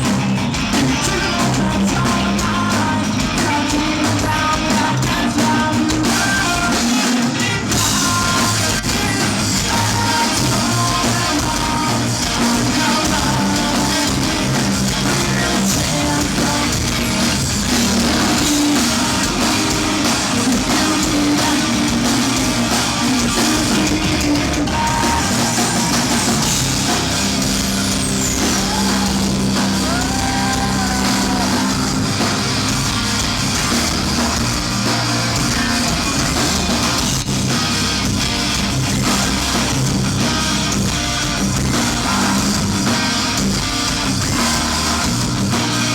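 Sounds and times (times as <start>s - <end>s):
distorted electric guitars: 0.0s - 45.9s
drum kit: 0.0s - 45.9s
person singing: 0.7s - 36.8s.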